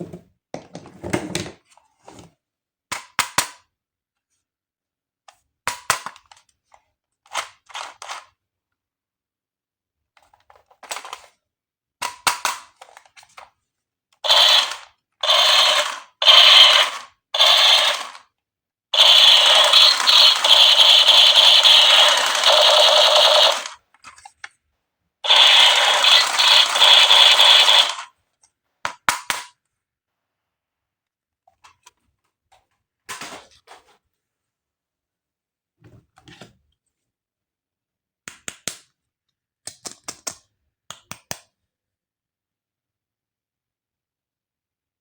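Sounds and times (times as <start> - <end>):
plastic toys rattling and crinkling: 14.2 - 18.2, 19.0 - 24.5, 25.2 - 28.1.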